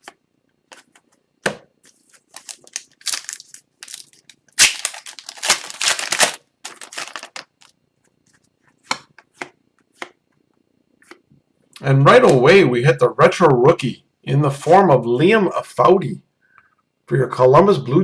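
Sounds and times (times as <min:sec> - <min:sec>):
foil wrapper tearing and crinkling: 0:02.1 - 0:07.7.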